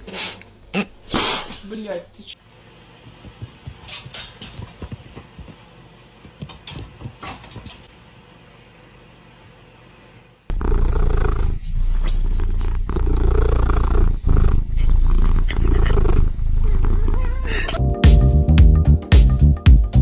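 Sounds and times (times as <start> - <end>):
cat purring: 10.5 - 17.8.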